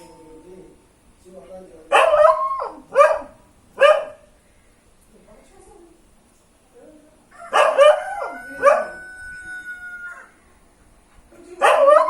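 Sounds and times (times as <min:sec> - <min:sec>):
dog barking: 0:01.9 - 0:04.3, 0:07.4 - 0:09.0, 0:11.6 - 0:12.0.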